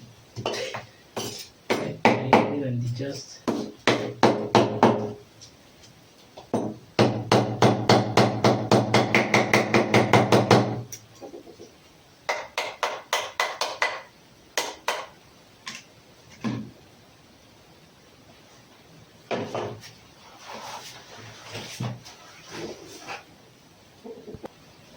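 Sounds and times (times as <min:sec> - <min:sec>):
hammer tapping: 0:12.3 - 0:15.1.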